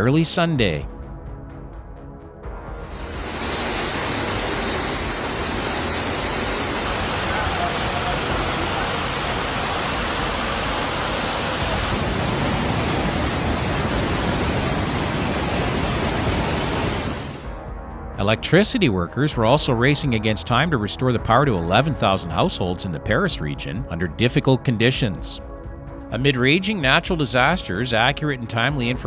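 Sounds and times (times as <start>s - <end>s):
loud rushing water: 2.8s - 17.7s.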